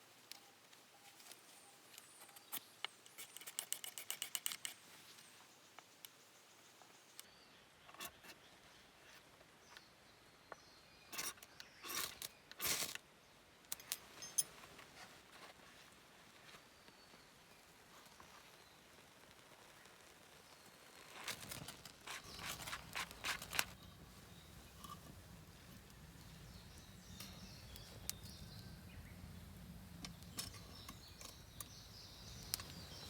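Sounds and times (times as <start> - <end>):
short rustling scrapes: 21.0 - 25.2.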